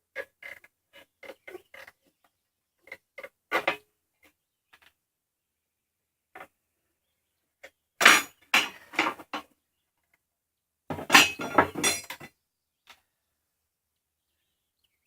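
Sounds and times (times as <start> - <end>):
clattering clinking handling noise: 10.9 - 12.3.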